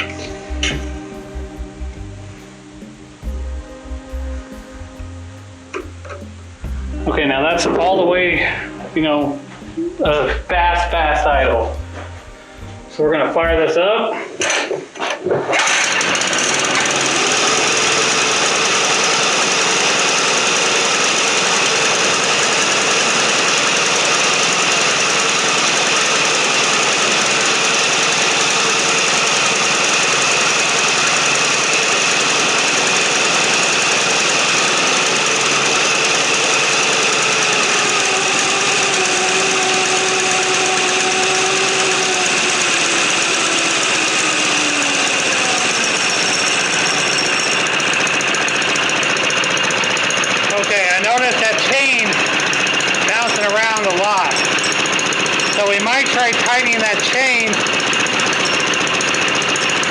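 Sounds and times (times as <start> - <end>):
mini bike engine running: 0.0 - 1.8, 15.5 - 59.9.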